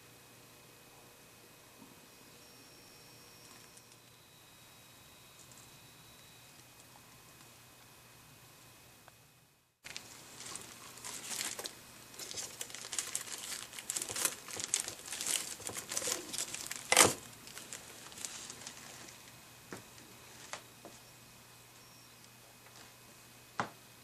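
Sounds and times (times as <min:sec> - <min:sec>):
hands rustling food packaging: 0:09.8 - 0:19.4.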